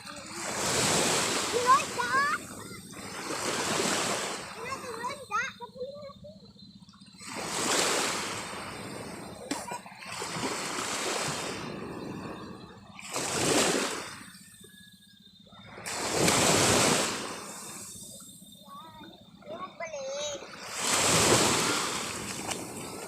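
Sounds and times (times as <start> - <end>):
sea waves splashing: 0.0 - 6.3, 7.1 - 14.6, 15.6 - 23.0.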